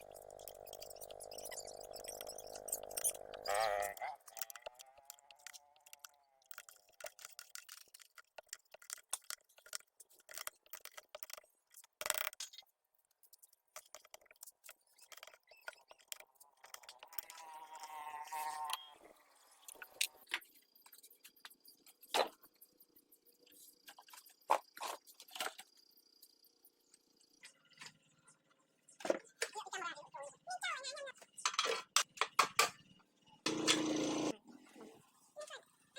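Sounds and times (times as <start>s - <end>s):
metal tools clicking and knocking: 0.0s - 12.6s.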